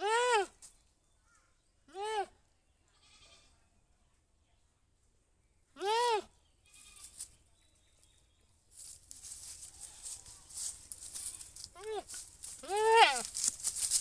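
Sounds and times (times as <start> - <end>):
goat bleating: 0.0 - 0.5, 3.0 - 3.5, 5.8 - 7.1, 11.2 - 13.4.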